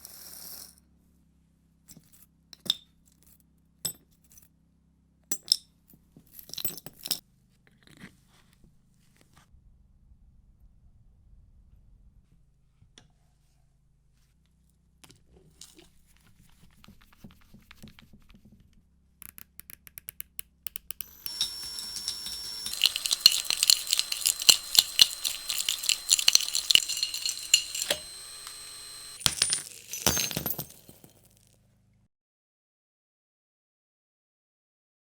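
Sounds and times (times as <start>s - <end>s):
metal parts clinking: 21.0s - 31.2s.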